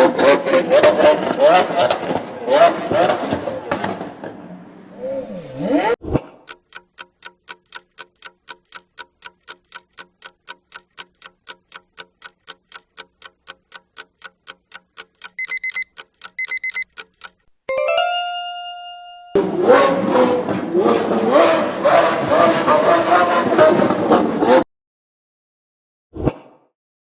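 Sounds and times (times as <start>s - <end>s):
car engine revving: 0.0s - 6.0s, 19.4s - 24.6s
clock-like ticking: 6.4s - 17.5s
short high beeps: 15.3s - 17.0s.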